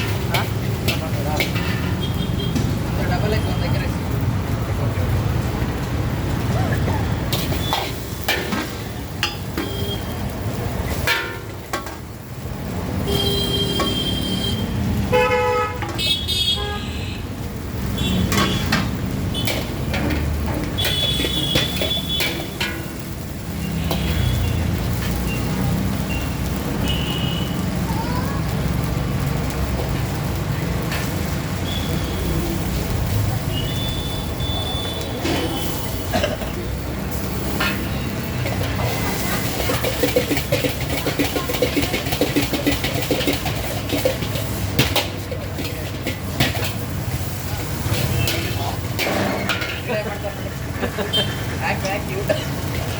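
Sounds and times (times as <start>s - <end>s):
street traffic rumbling: 0.0s - 52.9s
vehicle horns honking: 13.0s - 17.3s, 17.9s - 18.7s, 20.7s - 22.5s
low rumble of cooking pan: 35.2s - 51.6s.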